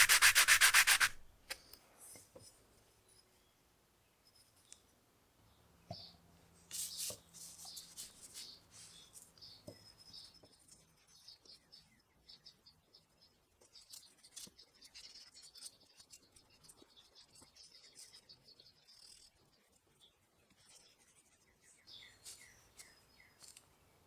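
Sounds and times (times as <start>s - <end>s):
hand tool scraping wood: 0.0s - 1.5s.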